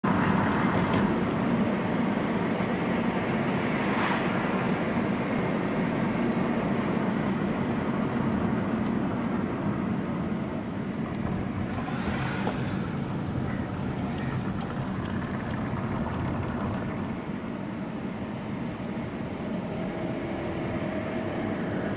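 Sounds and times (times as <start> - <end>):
car engine running: 0.0 - 21.9
road noise: 0.0 - 21.9
brief rushing sound: 11.2 - 17.2.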